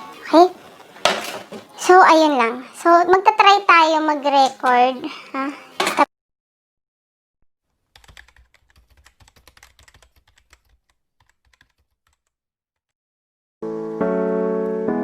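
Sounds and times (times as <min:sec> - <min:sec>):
rapid irregular clicks and taps: 0:08.0 - 0:12.3.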